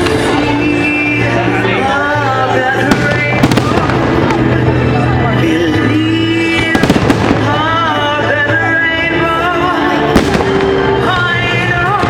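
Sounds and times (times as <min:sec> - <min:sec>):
loud music: 0:00.0 - 0:12.0
fireworks crackling pops: 0:02.8 - 0:04.8, 0:06.5 - 0:07.8, 0:10.2 - 0:12.0
firework sharp bang: 0:02.9 - 0:04.7, 0:10.2 - 0:10.9.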